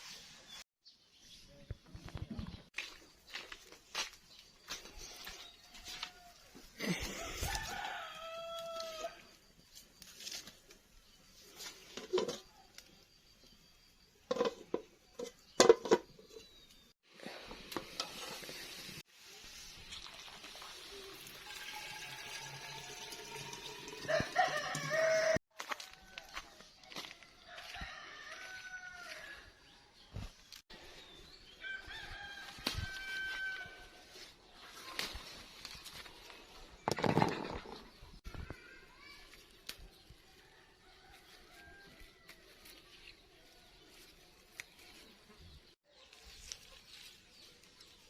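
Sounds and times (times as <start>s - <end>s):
rooster crowing: 7.1s - 9.3s, 24.0s - 26.5s, 27.5s - 29.5s, 31.6s - 34.0s.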